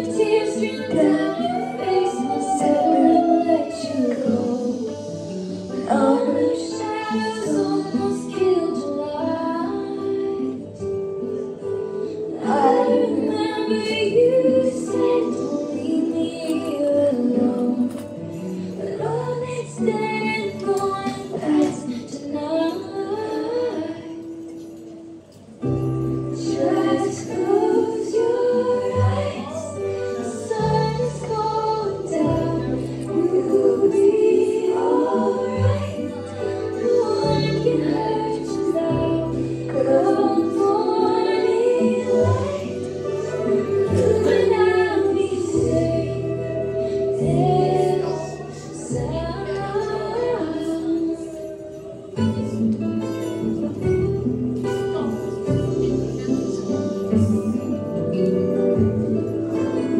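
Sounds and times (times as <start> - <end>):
woman singing a song: 0.0 - 24.6, 26.3 - 59.9.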